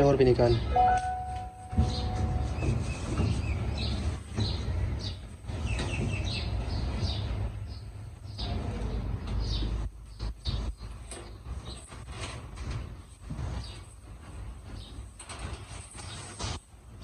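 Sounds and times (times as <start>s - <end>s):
small birds chirping: 1.8s - 12.2s, 12.8s - 15.1s.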